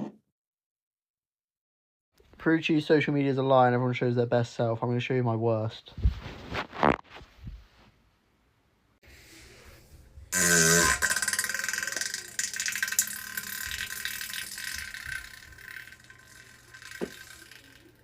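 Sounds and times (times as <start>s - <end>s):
long loud fart: 10.3s - 13.7s.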